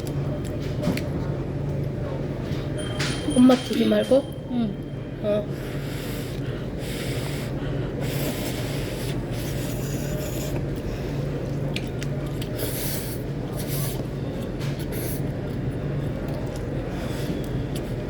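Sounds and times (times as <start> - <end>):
slurping noodles: 5.7 - 11.3.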